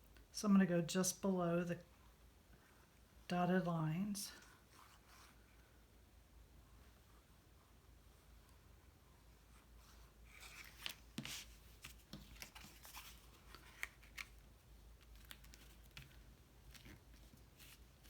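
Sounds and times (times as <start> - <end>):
card stock rustling and clicking: 10.3 - 18.0.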